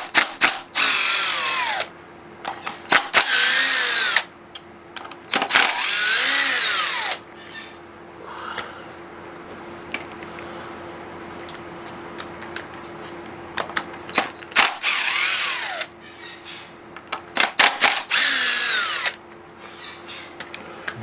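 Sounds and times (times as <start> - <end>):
cordless impact driver bursts: 0.0 - 1.9, 2.9 - 4.3, 5.3 - 7.2, 14.6 - 15.9, 17.4 - 19.2.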